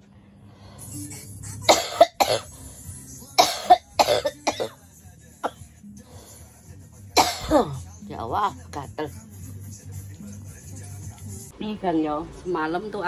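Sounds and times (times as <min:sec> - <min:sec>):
woman coughing: 0:01.6 - 0:02.5, 0:03.4 - 0:04.8, 0:07.2 - 0:07.9.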